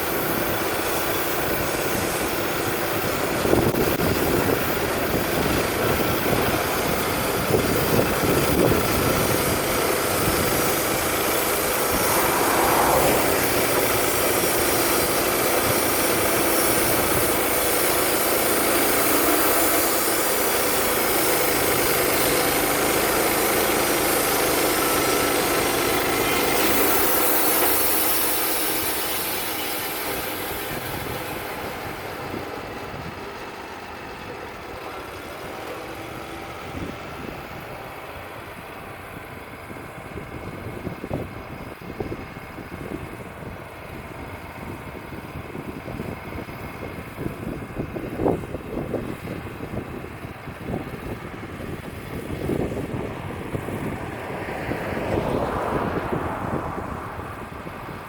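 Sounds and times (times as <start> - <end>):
bandsaw mill cutting log: 0.0 - 40.2.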